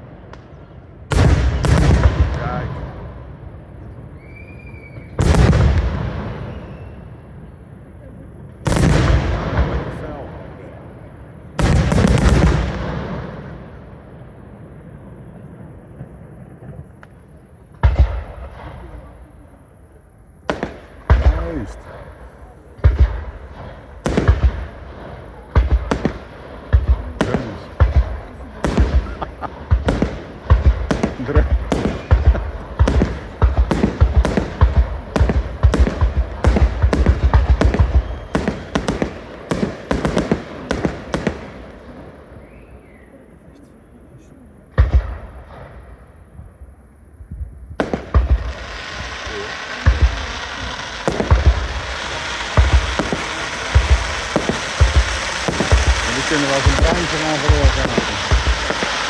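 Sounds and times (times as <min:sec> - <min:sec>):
faint firework pops: 0:00.2 - 0:03.0, 0:15.9 - 0:19.6, 0:20.4 - 0:43.1, 0:44.7 - 0:59.0
firework shells bursting: 0:11.1 - 0:13.6, 0:15.9 - 0:43.0, 0:47.0 - 0:59.0.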